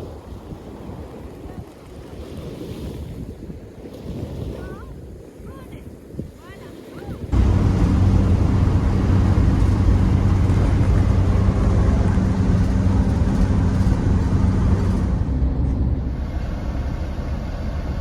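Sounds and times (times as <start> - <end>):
engine and road noise: 7.3 - 18.0.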